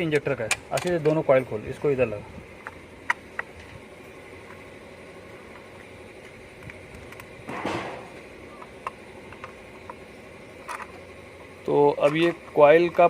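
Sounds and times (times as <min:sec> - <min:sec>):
clicks and knocks of handling parts: 0:00.0 - 0:01.4, 0:05.5 - 0:11.0, 0:11.9 - 0:13.0
low background hum: 0:00.0 - 0:13.0.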